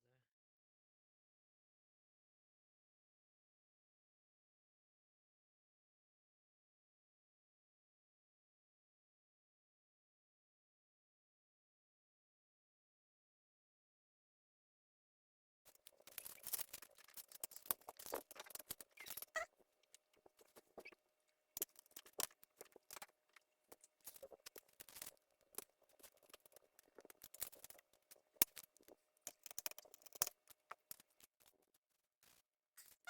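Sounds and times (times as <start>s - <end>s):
tools clicking and tapping: 15.7s - 20.9s, 21.6s - 31.6s.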